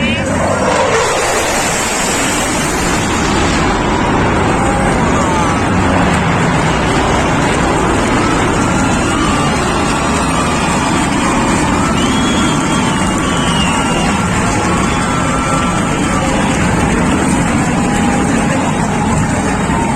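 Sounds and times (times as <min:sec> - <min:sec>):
loud jet engine noise: 0:00.0 - 0:19.9
faint whistle-like tones: 0:11.8 - 0:15.8.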